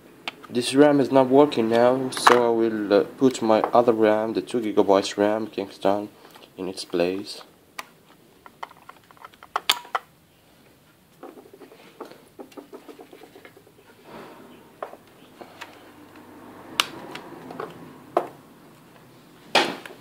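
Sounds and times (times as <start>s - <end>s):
plastic rustling and scraping: 11.1s - 14.1s.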